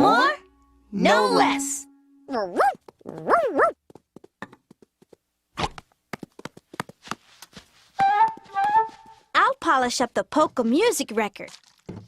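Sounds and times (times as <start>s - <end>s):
cartoon dog yipping: 2.3s - 3.8s.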